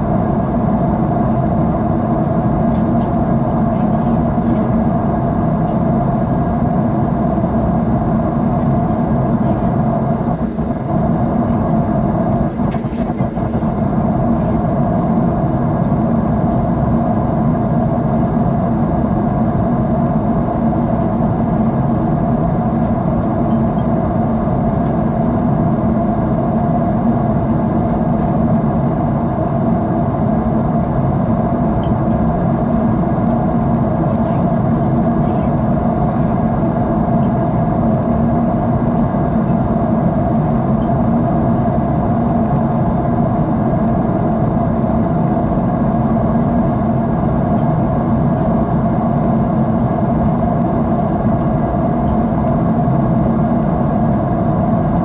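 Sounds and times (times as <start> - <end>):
jet engine hum inside cabin: 0.0 - 55.0.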